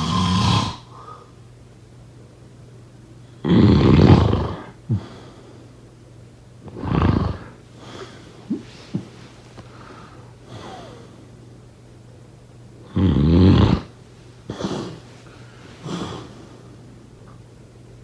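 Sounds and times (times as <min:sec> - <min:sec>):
person snoring: 0:00.0 - 0:00.9, 0:03.4 - 0:04.7, 0:06.7 - 0:07.6, 0:12.9 - 0:15.0
steady low hum: 0:00.0 - 0:18.0.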